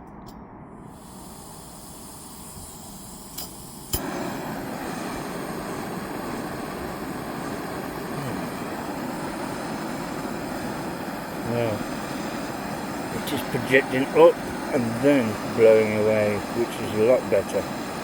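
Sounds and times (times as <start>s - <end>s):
gas hiss: 0.7s - 18.0s
stove burner flame rushing: 0.7s - 18.0s
igniter clicks: 1.8s - 18.0s.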